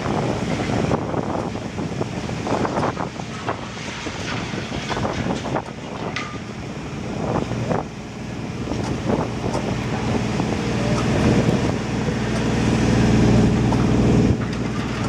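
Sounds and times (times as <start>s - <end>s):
heavy diesel machinery running: 0.0s - 15.0s
debris knocking: 2.4s - 7.8s.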